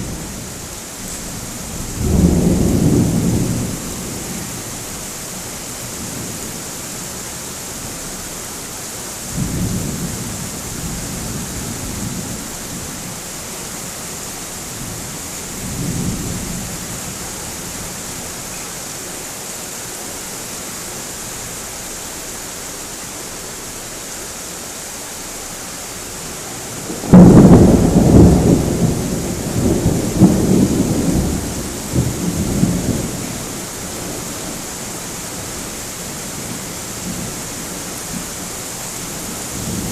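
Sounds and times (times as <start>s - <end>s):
steady rain hiss: 0.0s - 39.9s
distant thunder rolling: 1.7s - 4.6s, 26.5s - 34.4s
loud thunderclap: 1.8s - 3.8s, 26.6s - 33.3s.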